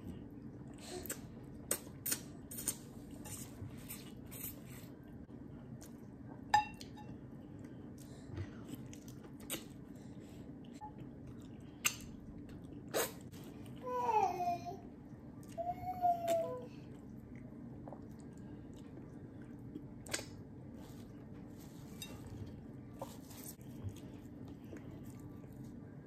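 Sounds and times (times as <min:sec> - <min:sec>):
low steady hum: 0:00.0 - 0:26.0
person chewing close up: 0:07.5 - 0:13.8, 0:16.8 - 0:21.3, 0:22.4 - 0:25.8.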